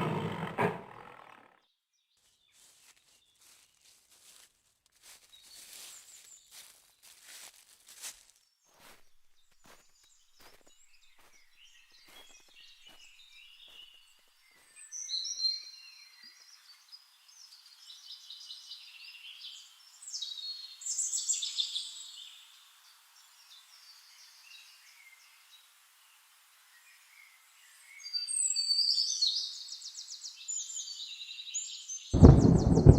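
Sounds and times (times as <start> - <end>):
birds chirping: 32.2 - 32.9.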